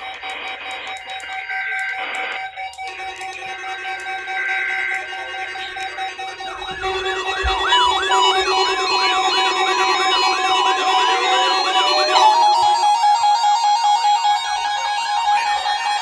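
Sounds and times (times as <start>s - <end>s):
weather radio alarm beeping: 0.2s - 12.8s
wailing siren: 0.2s - 16.0s.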